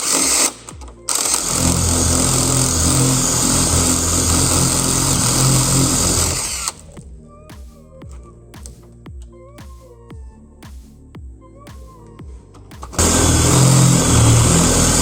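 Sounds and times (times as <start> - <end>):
electric drill boring into metal: 0.0 - 6.8, 13.0 - 15.0.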